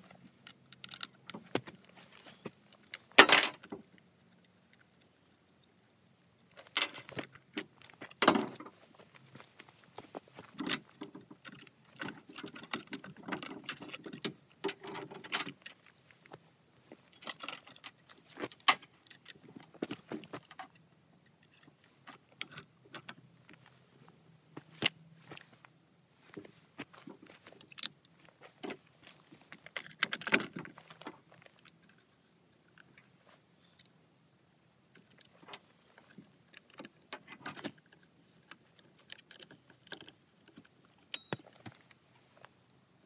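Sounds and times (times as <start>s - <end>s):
chainsaw chain clinking and rattling: 0.5s - 1.4s, 10.4s - 16.0s, 17.1s - 23.1s.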